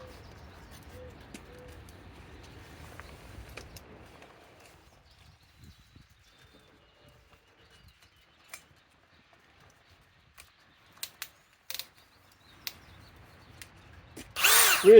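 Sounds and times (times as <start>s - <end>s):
sharp clicks: 14.3s - 14.9s.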